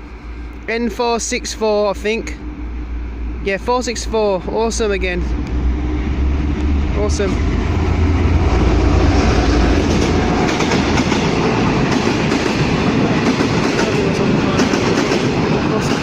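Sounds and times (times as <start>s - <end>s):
deep low rumble: 1.8s - 13.3s
train wheels clattering over rails: 6.6s - 16.0s.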